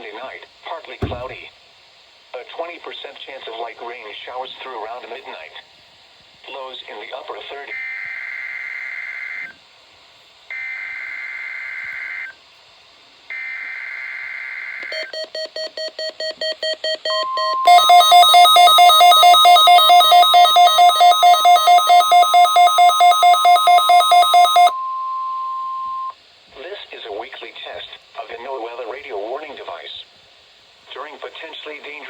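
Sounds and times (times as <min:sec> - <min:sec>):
radio alarm beeping rapidly: 0:01.0 - 0:01.4, 0:16.6 - 0:26.1
steady warning alarm tone: 0:01.0 - 0:01.4, 0:17.0 - 0:26.1
buzzy digital header tones: 0:17.4 - 0:26.1.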